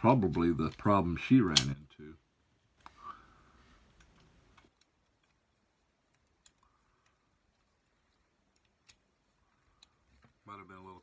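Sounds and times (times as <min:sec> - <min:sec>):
faint plastic clicks: 0:06.0 - 0:10.5.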